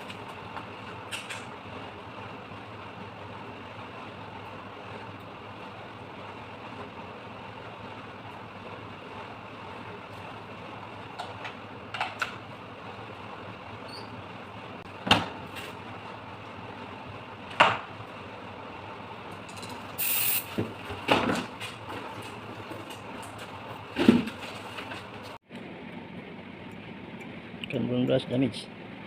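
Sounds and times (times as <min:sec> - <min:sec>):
short hiss: 0:20.0 - 0:20.5.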